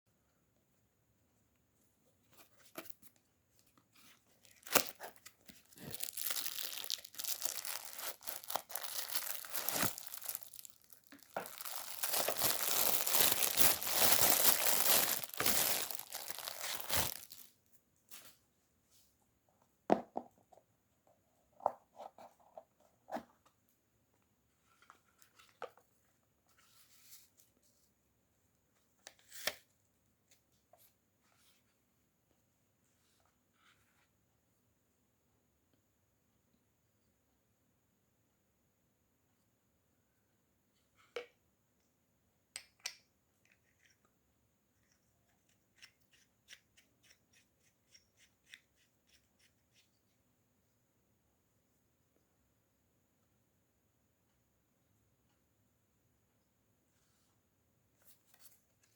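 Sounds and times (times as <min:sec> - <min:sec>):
packaging ripping and crinkling: 0:04.4 - 0:17.5.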